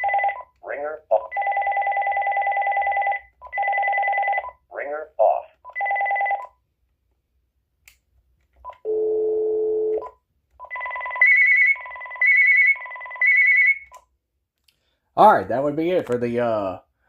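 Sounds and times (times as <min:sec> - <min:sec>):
warbling electronic phone ring: 0:00.0 - 0:00.5, 0:01.1 - 0:04.6, 0:05.7 - 0:06.5, 0:10.6 - 0:13.9.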